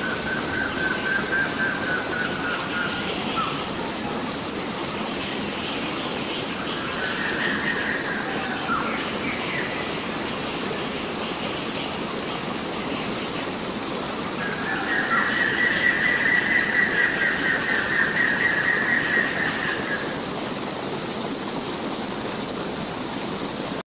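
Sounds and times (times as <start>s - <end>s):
wild bird calling: 0.0s - 20.2s
flowing water rushing: 0.0s - 23.8s.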